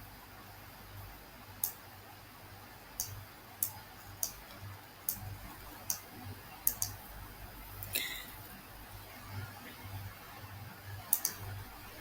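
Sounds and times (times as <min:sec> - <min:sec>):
computer mouse clicking: 0:01.6 - 0:01.8, 0:03.0 - 0:07.0, 0:11.1 - 0:11.5.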